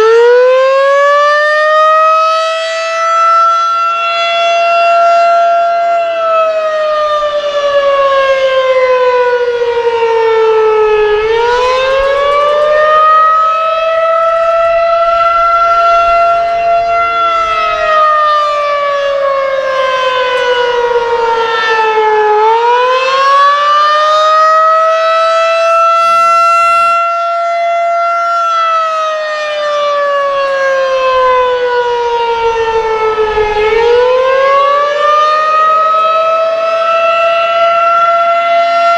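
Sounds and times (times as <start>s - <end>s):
tornado siren wailing: 0.0s - 38.9s.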